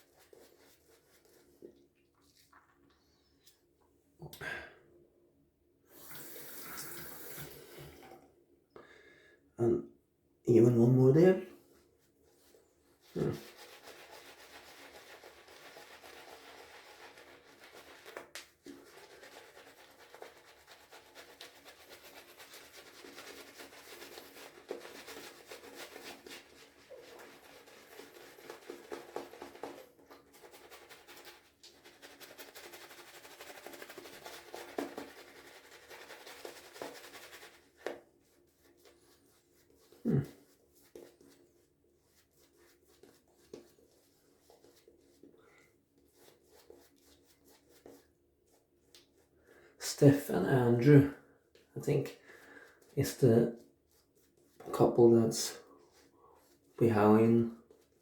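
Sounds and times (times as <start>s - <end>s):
shaving brush lathering soap: 0.0s - 3.6s, 12.2s - 50.9s, 51.5s - 58.0s.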